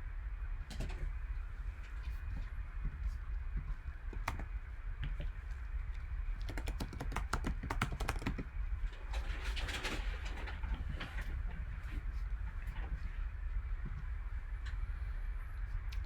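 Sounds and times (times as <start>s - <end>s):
steady low hum: 0.0s - 16.0s
typing on computer keyboard: 4.1s - 4.5s, 6.4s - 8.5s.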